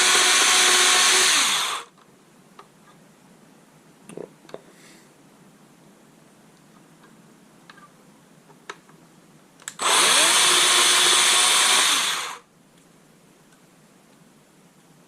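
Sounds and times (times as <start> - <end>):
electric power tool spinning: 0.0 - 1.9, 9.8 - 12.4.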